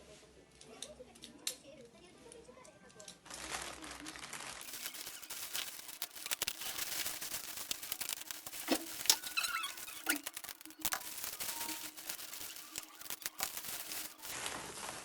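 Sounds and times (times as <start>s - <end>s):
packaging clicks and crinkles: 3.3s - 14.4s.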